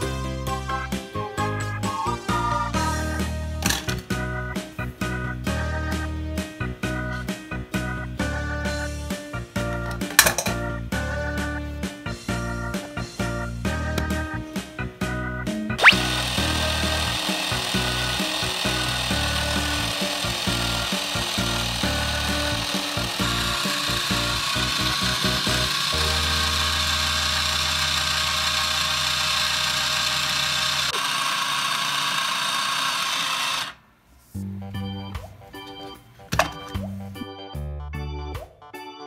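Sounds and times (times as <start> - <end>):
background music: 0.0 - 27.4, 34.4 - 39.0
rising whistle: 1.8 - 2.7
rasping grinding noise: 15.8 - 33.8.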